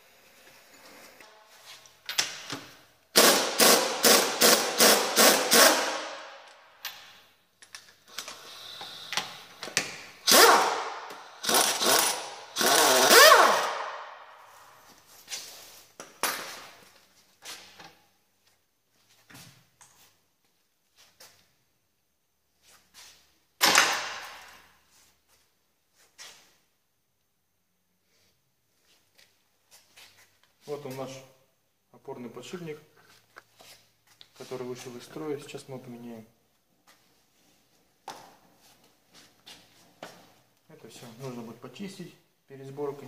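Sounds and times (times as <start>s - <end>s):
impact wrench running: 3.1s - 6.2s, 10.2s - 13.9s.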